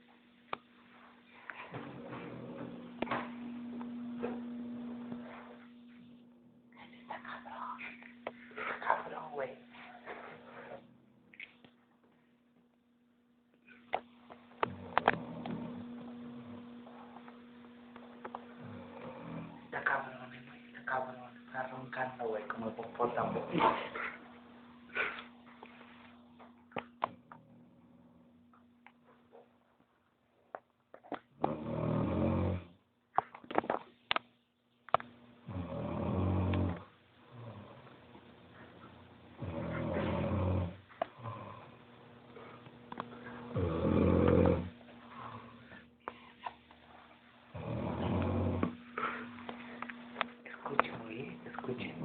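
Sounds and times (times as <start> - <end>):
electrical hum: 0.0 - 52.0
man snoring: 14.6 - 16.6, 18.6 - 20.0, 31.4 - 32.8, 35.4 - 37.9, 39.4 - 41.9, 43.4 - 44.8, 47.5 - 48.8.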